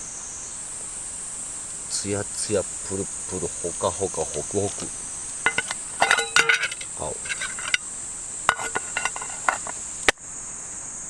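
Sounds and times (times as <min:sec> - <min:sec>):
high-pitched insect drone: 0:00.0 - 0:11.0
metal utensil clinking on pot: 0:04.6 - 0:07.8, 0:08.5 - 0:09.8.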